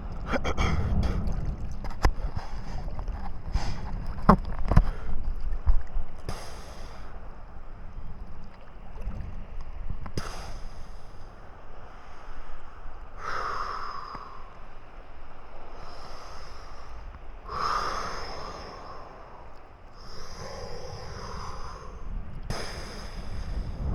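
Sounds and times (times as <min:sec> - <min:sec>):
swimmer breathing hard: 0:00.0 - 0:04.0, 0:06.2 - 0:07.2, 0:10.2 - 0:14.9, 0:15.6 - 0:23.9
water washing: 0:00.0 - 0:23.9
wind: 0:00.0 - 0:23.9.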